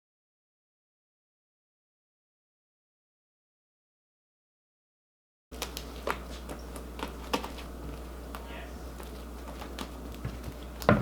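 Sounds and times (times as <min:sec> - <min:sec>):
steady low hum: 0:05.5 - 0:11.0.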